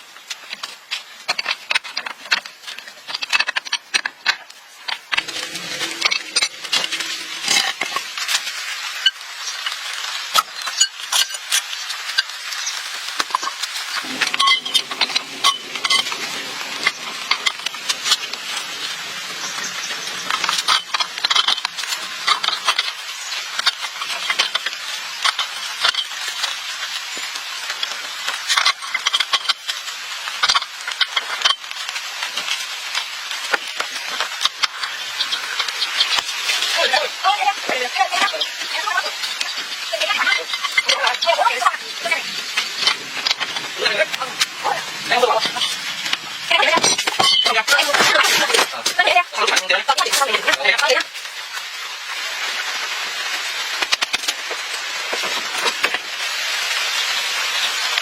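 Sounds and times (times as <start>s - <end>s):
sharp clicks and knocks: 0.3s - 8.1s, 53.8s - 54.6s
scraping and clattering of repair work: 0.3s - 56.8s.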